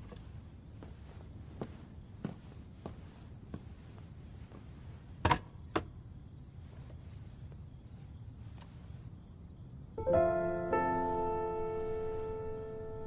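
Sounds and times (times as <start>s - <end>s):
soft footsteps: 0.0s - 5.2s
insects chirping: 0.0s - 13.0s.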